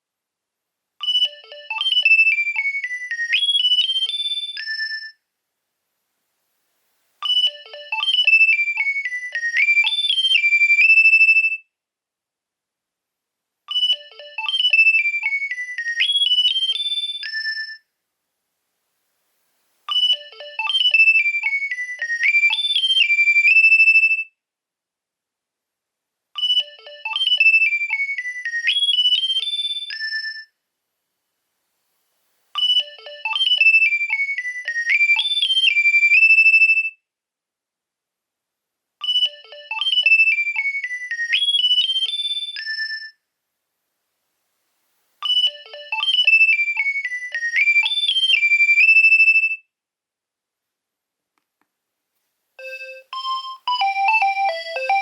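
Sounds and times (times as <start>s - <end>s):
electronic phone ringtone melody: 1.0s - 5.2s, 7.2s - 11.4s, 13.7s - 17.8s, 19.9s - 23.7s, 26.4s - 30.5s, 32.6s - 36.2s, 39.0s - 43.2s, 45.2s - 49.5s, 52.6s - 55.0s.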